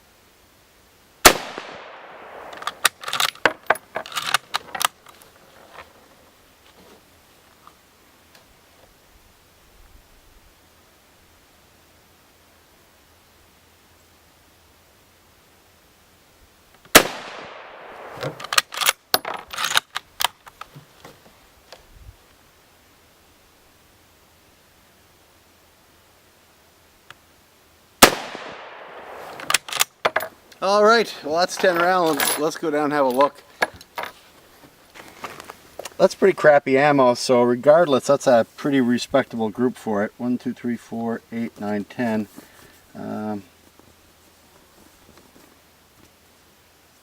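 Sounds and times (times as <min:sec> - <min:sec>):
rifle shot: 0:01.2 - 0:02.9, 0:16.9 - 0:18.7, 0:28.0 - 0:29.8
rifle bolt metallic clacks: 0:02.4 - 0:05.0, 0:18.0 - 0:20.7, 0:29.3 - 0:30.3.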